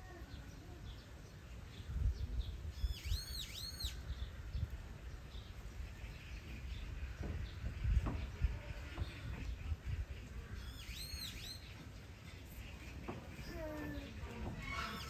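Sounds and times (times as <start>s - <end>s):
bird chirping: 0.3s - 8.3s, 10.6s - 14.0s.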